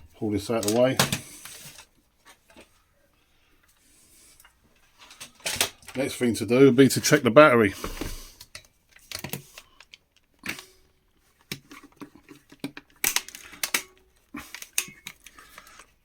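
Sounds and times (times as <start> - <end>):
tools clicking and tapping: 11.5 - 15.3.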